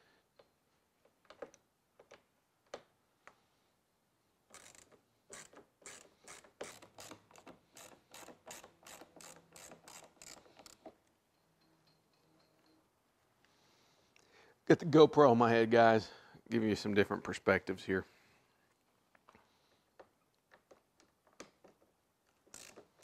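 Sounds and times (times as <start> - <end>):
screwdriver ratcheting clicks: 4.5 - 11.0, 20.5 - 23.0.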